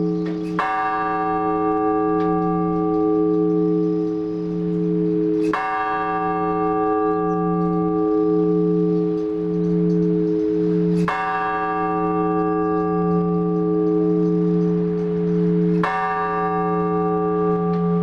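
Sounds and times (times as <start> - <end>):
large church bell striking: 0.0 - 18.0.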